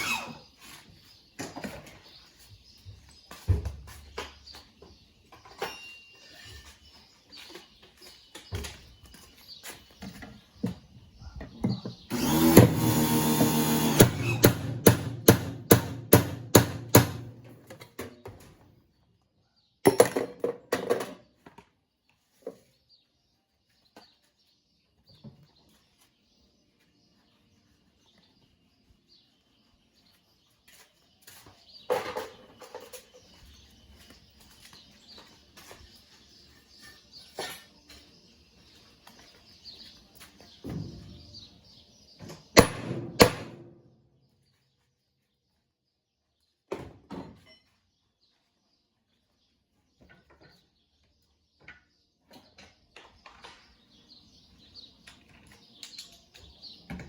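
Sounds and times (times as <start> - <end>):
sharp knocks on metal: 13.8 - 18.1, 42.3 - 43.7
small clicks and knocks of tools: 55.0 - 56.6.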